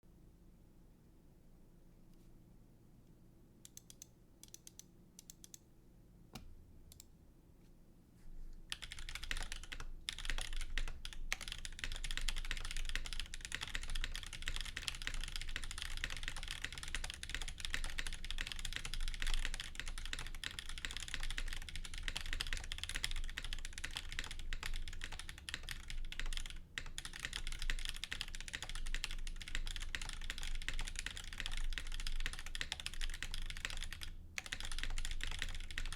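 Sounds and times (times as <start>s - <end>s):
mechanical keyboard typing: 8.7s - 35.9s.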